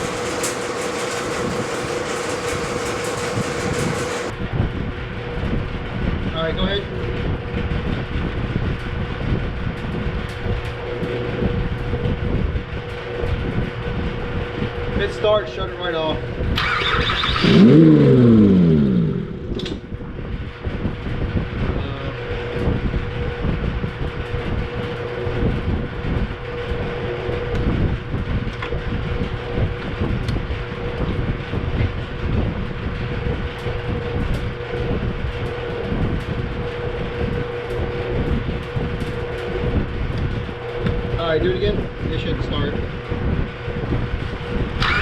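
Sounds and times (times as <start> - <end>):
car engine starting and shutting off: 0.0 - 4.3, 16.4 - 20.2, 44.7 - 45.0
steady low rumble with hum: 0.0 - 45.0.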